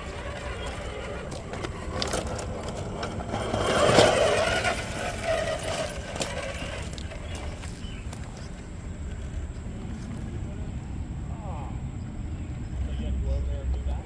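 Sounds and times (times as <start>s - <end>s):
small electric motor whirring: 0.0s - 8.6s.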